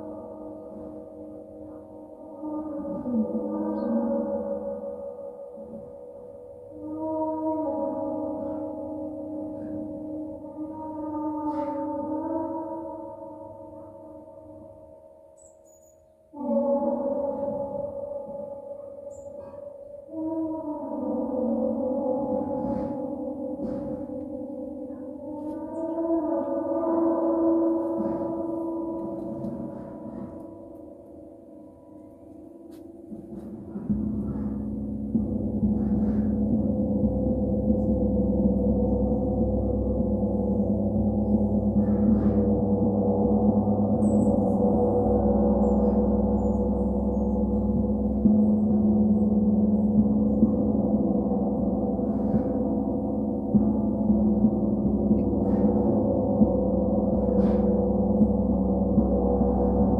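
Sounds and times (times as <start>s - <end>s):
gong ringing: 26.2s - 59.9s
soft gong strikes: 31.9s - 59.9s.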